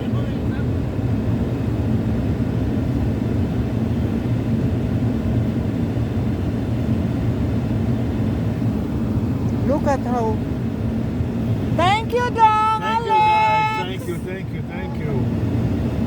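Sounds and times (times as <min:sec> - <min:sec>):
vehicle engine rumbling: 0:00.0 - 0:16.0
faint steady hum: 0:08.8 - 0:15.4.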